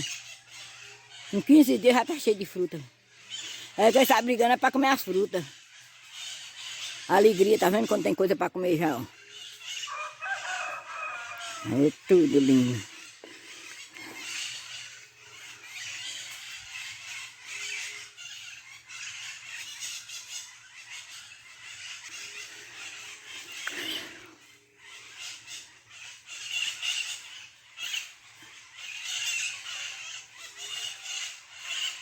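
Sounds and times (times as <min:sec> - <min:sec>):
parrots screeching: 0:00.0 - 0:32.0.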